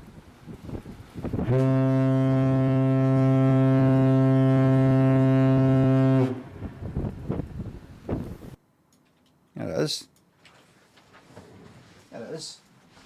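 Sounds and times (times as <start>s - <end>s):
long low horn blast: 1.4s - 7.5s.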